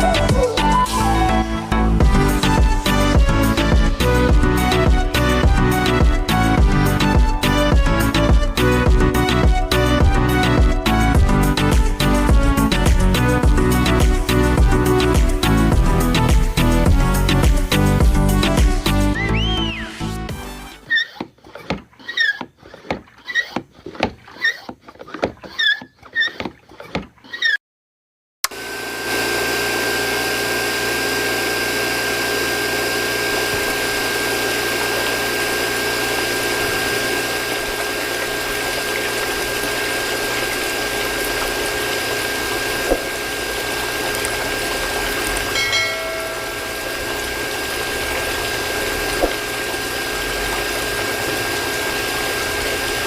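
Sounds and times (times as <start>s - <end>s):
water pump motor whine: 0.0s - 20.8s, 28.4s - 53.0s
music with rhythmic beat: 2.0s - 19.2s
water rushing and splashing: 36.2s - 53.0s.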